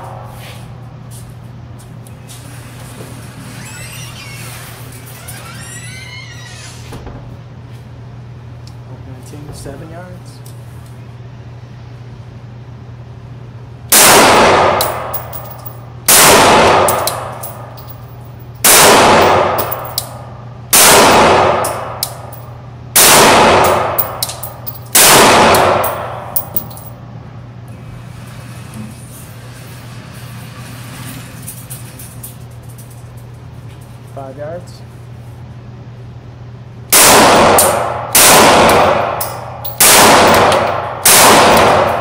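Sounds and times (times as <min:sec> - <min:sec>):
pistol shots: 0:13.9 - 0:15.4, 0:16.1 - 0:17.4, 0:18.6 - 0:19.9, 0:20.8 - 0:22.3, 0:23.0 - 0:26.4, 0:36.9 - 0:42.0.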